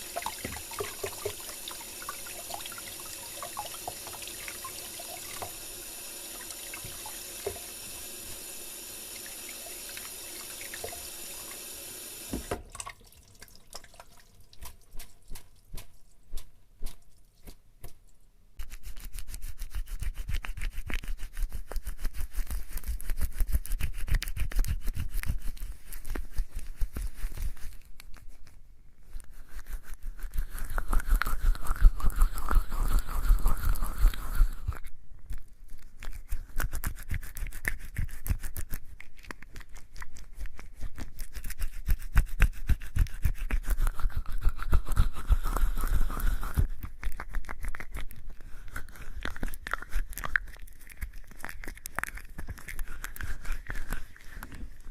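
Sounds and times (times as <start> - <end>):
soapy hands squelching scrub: 12.8 - 17.9, 35.8 - 54.9.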